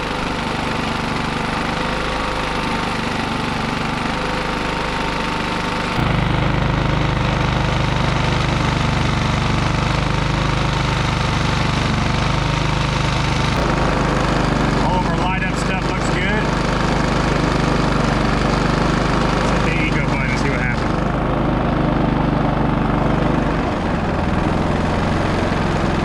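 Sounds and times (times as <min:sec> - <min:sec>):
generator engine running: 0:00.0 - 0:26.0.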